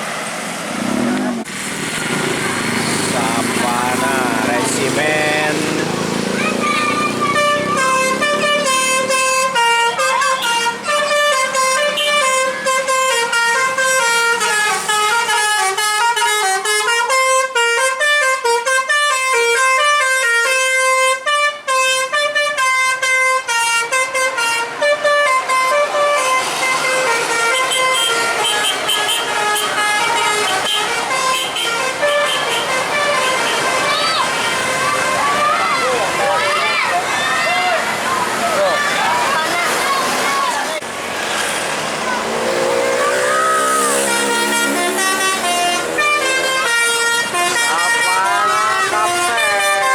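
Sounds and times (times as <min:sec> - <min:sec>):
rushing noise: 0:00.0 - 0:09.1
musical air horns melody: 0:03.1 - 0:35.8, 0:42.2 - 0:49.9.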